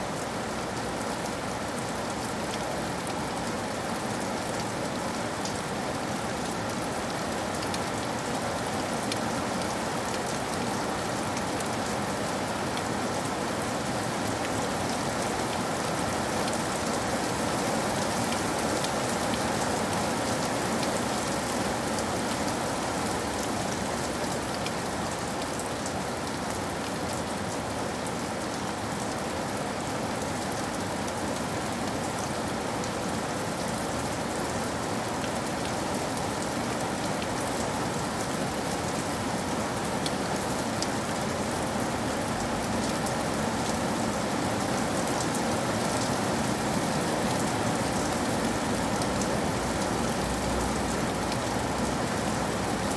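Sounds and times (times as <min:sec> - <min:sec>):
rain on hard surfaces: 0:00.0 - 0:52.9.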